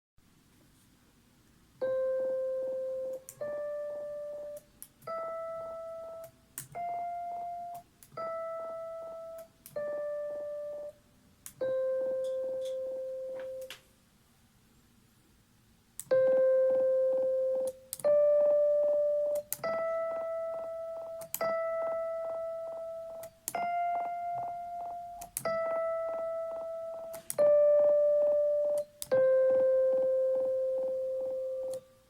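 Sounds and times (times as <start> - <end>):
keyboard-like melody from speakers: 1.8 - 13.7, 16.0 - 32.0
speaker popping clicks: 17.6 - 30.1.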